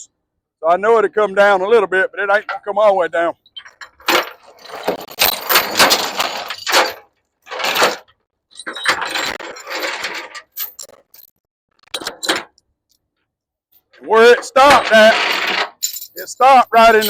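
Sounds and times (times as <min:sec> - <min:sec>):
metal clattering and jingling: 0:03.5 - 0:11.3, 0:13.8 - 0:17.0.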